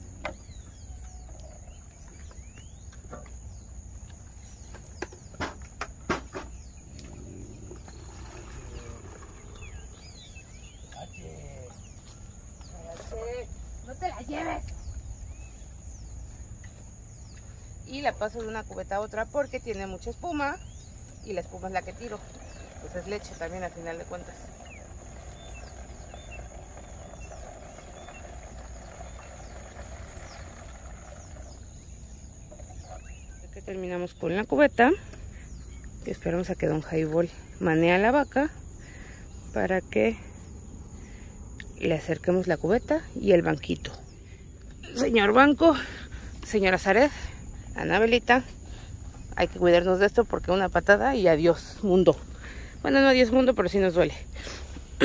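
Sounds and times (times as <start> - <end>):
birds chirping: 0.0 - 55.0
insects buzzing: 0.0 - 55.0
milk pouring into a bucket: 7.8 - 9.9, 22.2 - 31.8.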